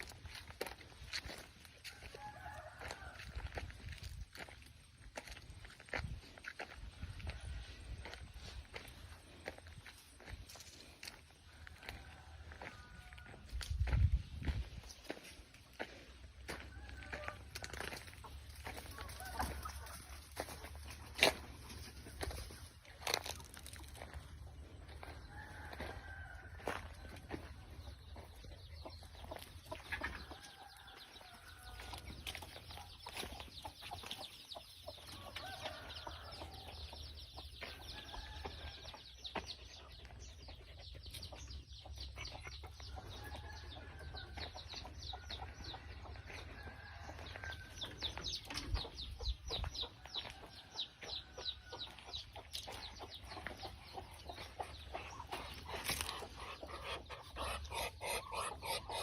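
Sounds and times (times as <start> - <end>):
chickens clucking: 0.0 - 59.0
small birds chirping: 27.0 - 59.0.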